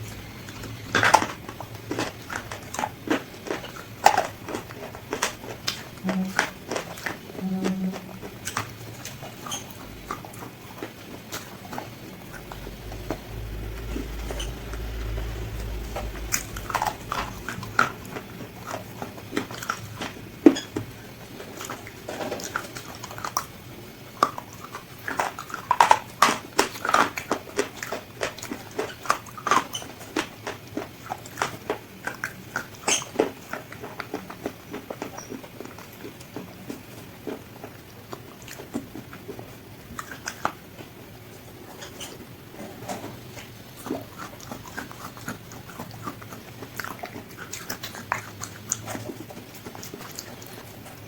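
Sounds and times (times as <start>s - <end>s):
crunchy chewing: 0.0s - 51.0s
low hum: 7.3s - 21.6s.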